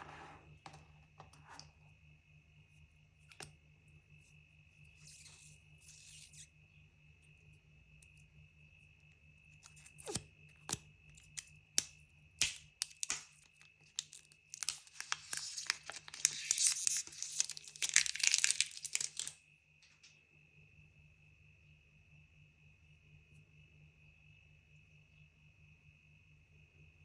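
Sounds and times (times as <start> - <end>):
packaging tearing and crinkling: 9.7 - 10.2, 12.4 - 19.4
packaging clicks and taps: 12.4 - 19.4.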